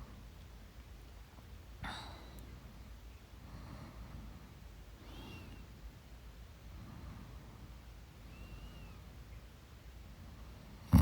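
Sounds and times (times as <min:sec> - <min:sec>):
low room rumble: 0:00.0 - 0:11.0
person breathing faintly: 0:06.6 - 0:07.8.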